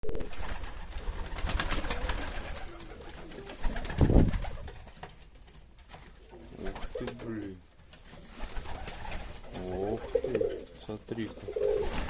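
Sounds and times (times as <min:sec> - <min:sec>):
pigeons cooing: 0:00.0 - 0:03.9, 0:08.2 - 0:12.0.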